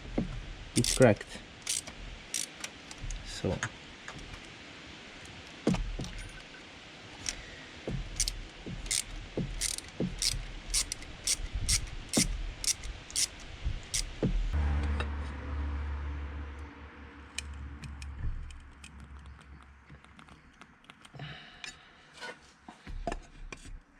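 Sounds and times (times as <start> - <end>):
steady low hum: 0.0 - 23.0
metal tools clinking: 0.8 - 1.0.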